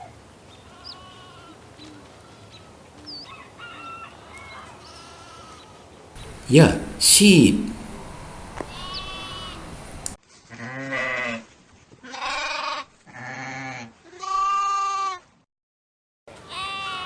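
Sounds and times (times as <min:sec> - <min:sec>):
sheep bleating: 0:07.6 - 0:10.0, 0:16.5 - 0:17.0.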